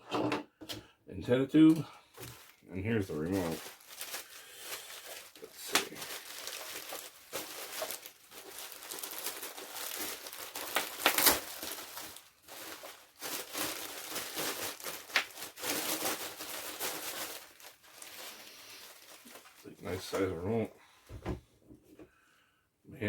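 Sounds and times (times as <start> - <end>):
plastic packaging crinkling: 1.6 - 20.6.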